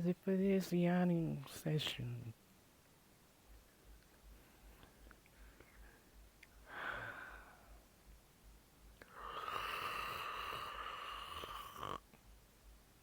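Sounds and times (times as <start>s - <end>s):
person breathing: 4.3s - 7.9s, 9.0s - 11.9s.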